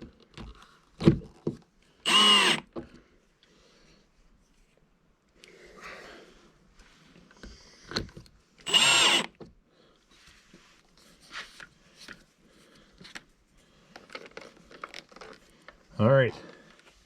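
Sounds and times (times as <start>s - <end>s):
cordless drill running: 2.1s - 2.7s, 8.7s - 9.3s.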